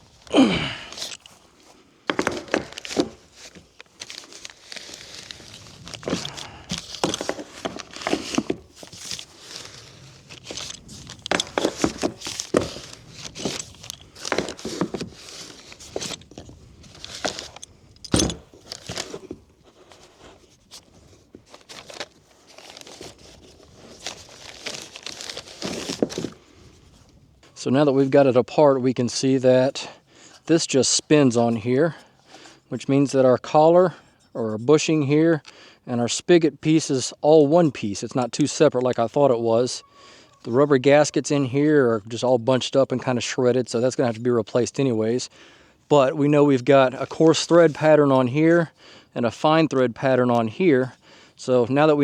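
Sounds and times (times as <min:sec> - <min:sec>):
plastic fitting scraping and creaking: 0:02.1 - 0:26.4.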